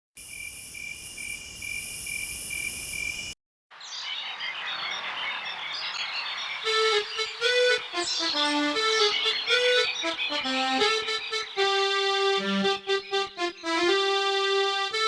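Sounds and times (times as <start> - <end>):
insects trilling: 0.2 - 3.4
chorus of high chirps: 1.1 - 14.4.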